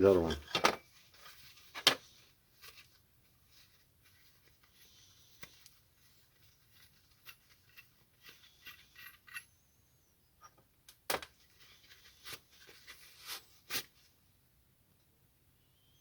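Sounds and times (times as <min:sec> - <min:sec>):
small metal parts clinking: 0:07.1 - 0:09.6.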